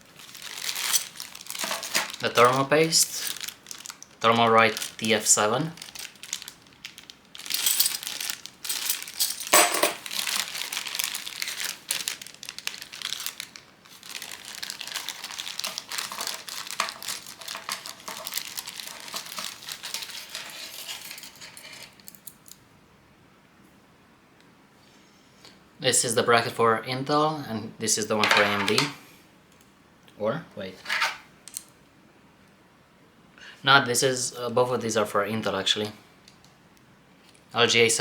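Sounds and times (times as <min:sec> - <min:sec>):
plastic packaging crinkling: 0:00.0 - 0:22.1.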